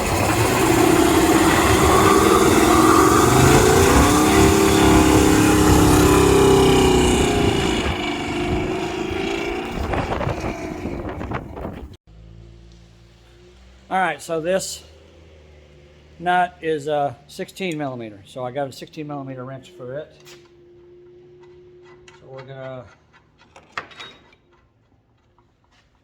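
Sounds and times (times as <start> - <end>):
vehicle engine revving: 0.0 - 14.1, 14.7 - 17.5.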